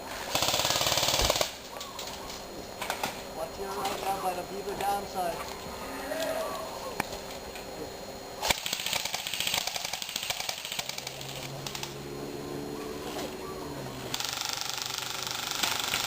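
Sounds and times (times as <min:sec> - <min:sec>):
airsoft guns firing full-auto: 0:00.2 - 0:01.7, 0:08.4 - 0:12.0, 0:14.1 - 0:16.0.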